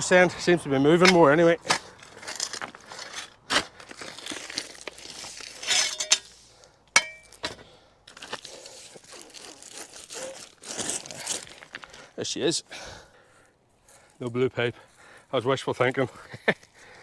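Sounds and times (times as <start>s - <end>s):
pipe and cable scraping in duct: 1.0s - 6.6s
sharp clink: 5.7s - 6.3s, 7.0s - 7.4s.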